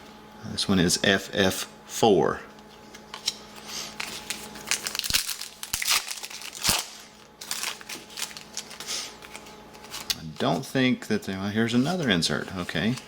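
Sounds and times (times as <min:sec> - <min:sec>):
card pack wrappers crinkling: 0:03.8 - 0:10.6.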